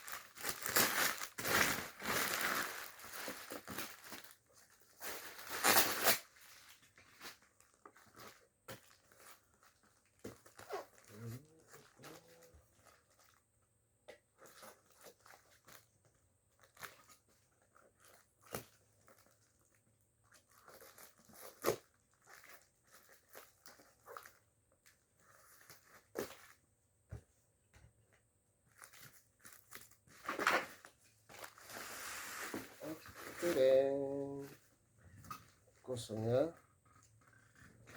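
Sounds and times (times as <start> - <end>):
packaging rustling and tearing: 0.0 - 13.4, 16.5 - 26.6, 28.7 - 34.6.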